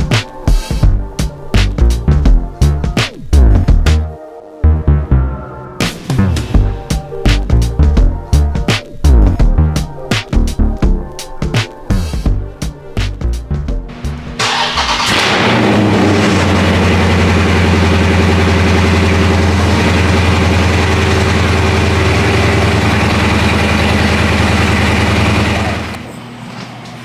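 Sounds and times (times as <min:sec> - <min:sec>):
loud car engine running: 0:13.9 - 0:26.0.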